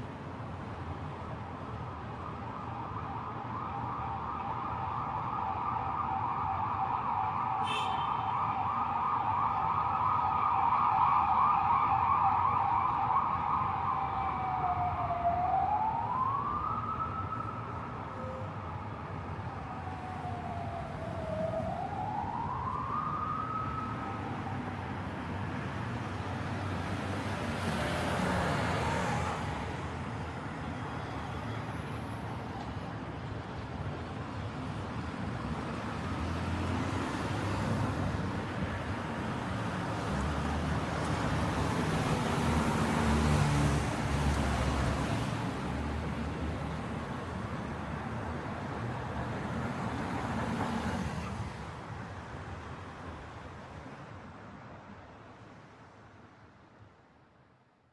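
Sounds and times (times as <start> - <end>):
siren gliding upward: 19.7 - 24.3
cars passing: 24.6 - 33.1, 35.2 - 55.9.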